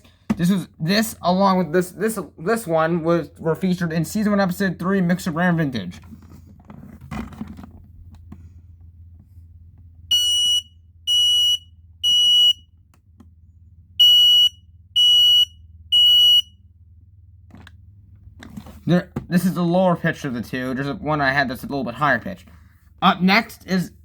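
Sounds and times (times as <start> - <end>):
smoke alarm shrill beeps: 10.1 - 12.7, 14.0 - 16.6.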